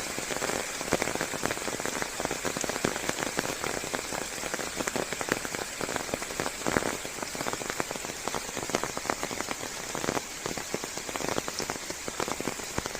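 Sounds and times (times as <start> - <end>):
rain falling on leaves: 0.0 - 12.9.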